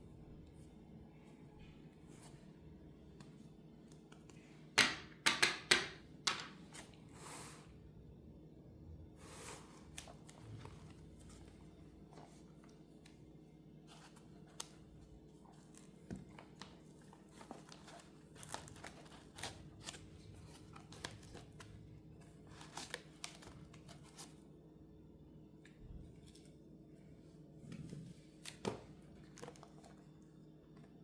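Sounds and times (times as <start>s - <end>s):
faint low hum: 0.0s - 5.2s, 5.9s - 31.0s
plastic packaging crinkling: 15.7s - 24.3s.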